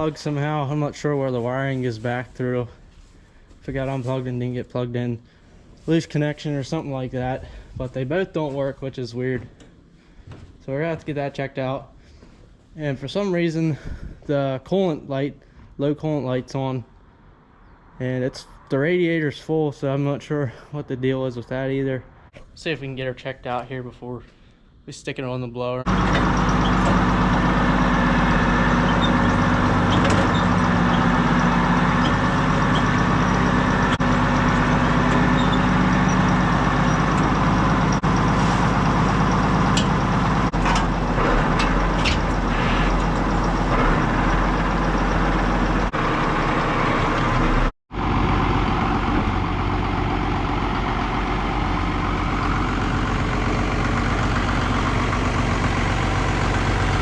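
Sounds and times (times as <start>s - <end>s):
tractor diesel engine running: 0.0s - 11.3s, 25.8s - 57.0s.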